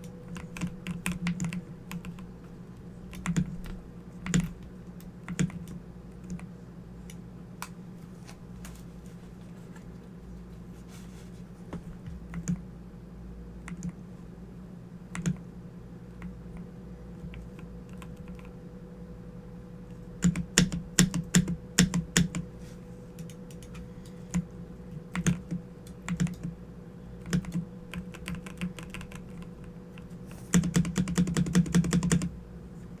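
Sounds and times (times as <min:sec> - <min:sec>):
computer keyboard typing: 0:00.0 - 0:02.3, 0:03.1 - 0:07.8, 0:12.3 - 0:12.6, 0:13.6 - 0:14.0, 0:15.1 - 0:15.5, 0:16.2 - 0:18.6, 0:20.2 - 0:22.5, 0:23.2 - 0:26.6, 0:27.2 - 0:32.4.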